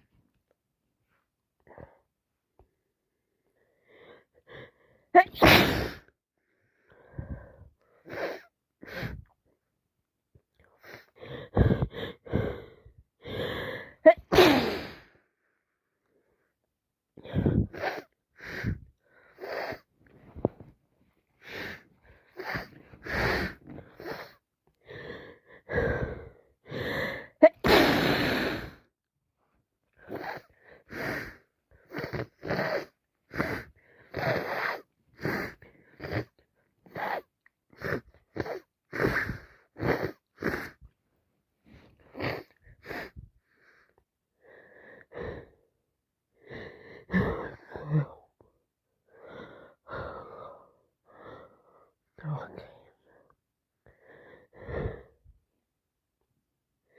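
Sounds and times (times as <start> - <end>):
person sniffing congested nose: 5.4 - 6.1, 14.3 - 15.1, 21.4 - 24.4, 27.5 - 28.8, 30.1 - 36.3, 36.9 - 40.8, 41.7 - 43.2.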